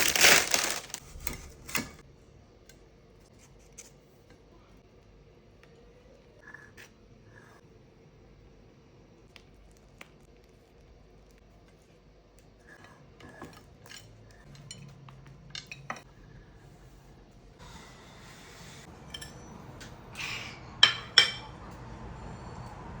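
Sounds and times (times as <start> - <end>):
cutlery and dishes clinking: 12.8 - 16.1, 18.9 - 20.0, 20.8 - 21.9.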